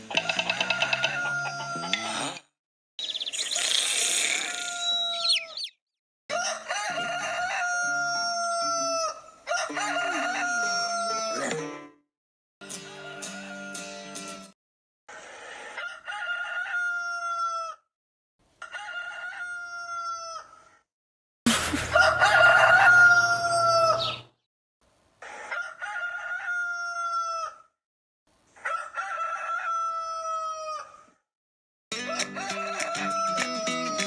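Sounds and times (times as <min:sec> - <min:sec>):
rooster crowing: 0:00.1 - 0:02.3, 0:04.5 - 0:05.6, 0:06.3 - 0:11.5, 0:12.8 - 0:14.4, 0:15.7 - 0:17.8, 0:18.6 - 0:20.8, 0:21.9 - 0:24.2, 0:25.3 - 0:27.7, 0:28.6 - 0:31.1, 0:32.0 - 0:34.0.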